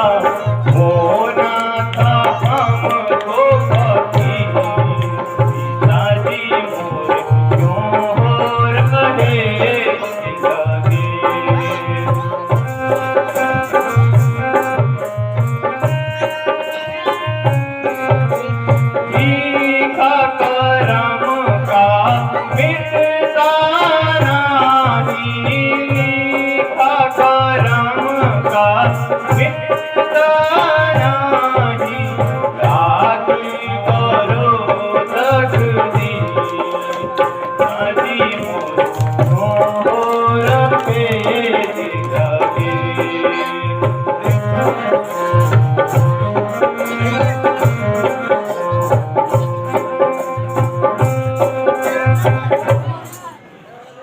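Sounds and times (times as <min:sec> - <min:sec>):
hand drum rhythm: 0:00.0 - 0:53.4
pitch-bending melody: 0:09.6 - 0:21.2, 0:37.0 - 0:53.2.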